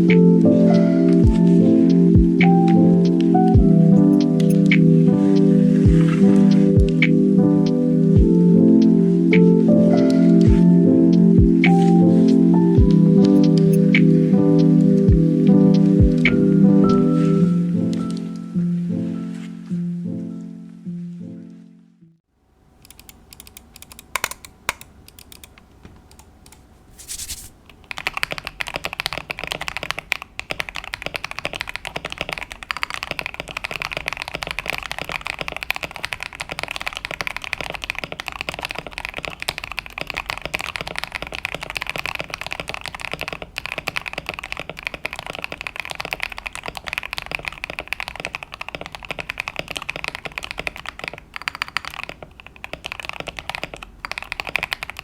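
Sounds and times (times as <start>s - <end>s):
typing on mechanical keyboard: 22.8s - 55.0s.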